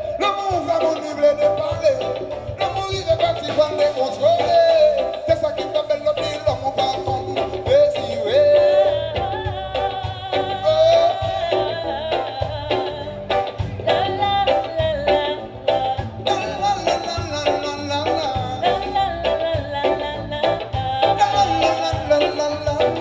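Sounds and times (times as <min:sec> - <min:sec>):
live band music: 0:00.0 - 0:23.0
person singing: 0:00.0 - 0:23.0
drum beat: 0:00.2 - 0:14.1.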